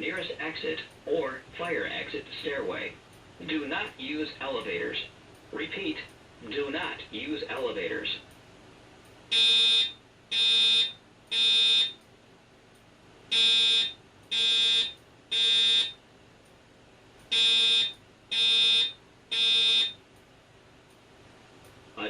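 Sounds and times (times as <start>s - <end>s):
fire alarm evacuation tone: 9.3s - 12.0s, 13.3s - 16.0s, 17.3s - 20.0s.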